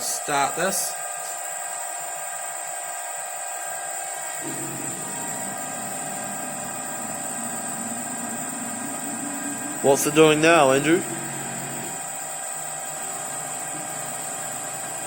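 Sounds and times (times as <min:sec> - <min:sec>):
milling machine spindle whine: 0:01.0 - 0:15.0
low machine drone: 0:04.4 - 0:15.0.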